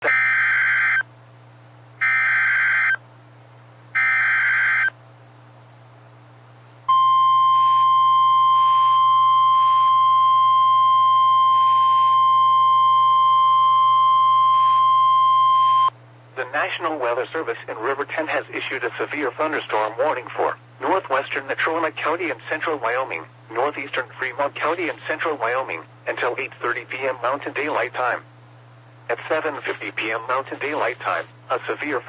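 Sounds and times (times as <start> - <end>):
steady warning alarm tone: 0.0 - 1.0, 2.0 - 3.0, 4.0 - 4.9, 6.9 - 15.9
faint low hum: 0.0 - 32.0.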